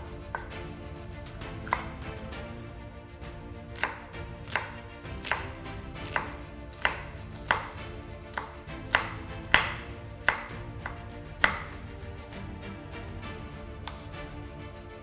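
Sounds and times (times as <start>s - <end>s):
quiet background music: 0.0s - 15.0s
knife striking chopping board: 0.3s - 0.6s, 1.6s - 2.0s, 3.8s - 11.8s, 13.8s - 14.2s.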